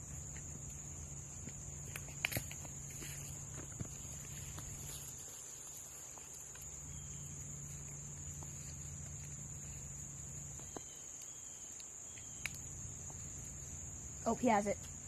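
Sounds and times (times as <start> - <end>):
high-pitched insect chorus: 0.0 - 15.0
faint clicks: 10.8 - 12.7.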